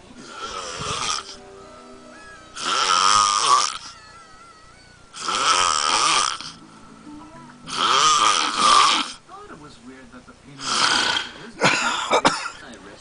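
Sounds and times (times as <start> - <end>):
man snoring loudly: 0.2 - 1.4, 2.6 - 3.9, 5.2 - 6.6, 7.7 - 9.2, 10.6 - 11.4.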